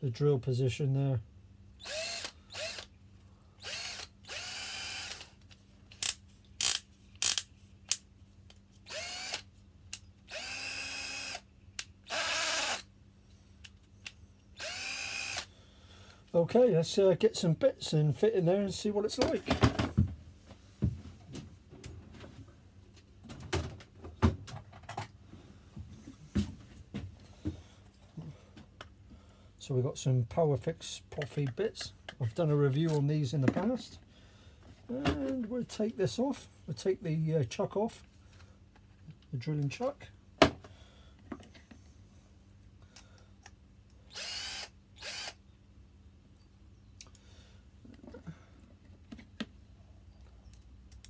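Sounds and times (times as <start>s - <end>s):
cordless drill spinning: 1.8s - 2.9s, 3.6s - 5.3s, 8.9s - 9.5s, 10.3s - 11.4s, 12.1s - 12.9s, 14.6s - 15.5s, 44.1s - 45.4s.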